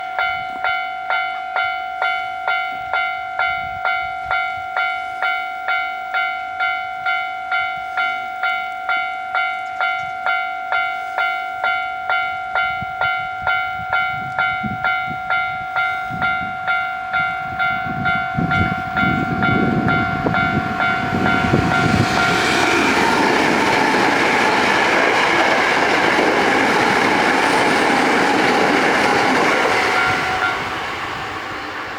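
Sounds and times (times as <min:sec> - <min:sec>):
level crossing bell ringing: 0:00.0 - 0:30.8
electric train running: 0:12.6 - 0:31.9.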